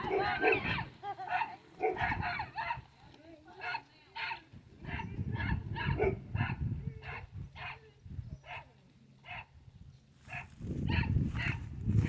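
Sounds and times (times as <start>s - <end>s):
dogs barking: 0.0s - 2.8s, 3.6s - 7.8s, 9.3s - 9.5s, 10.3s - 11.7s.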